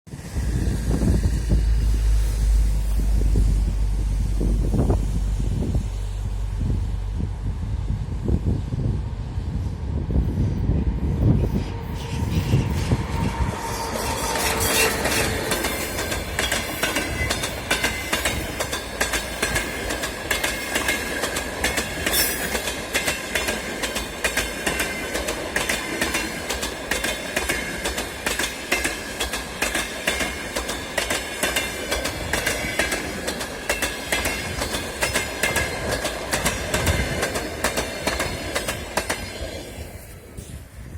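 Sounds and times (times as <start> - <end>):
train wheels clattering on rails: 11.7 - 39.8.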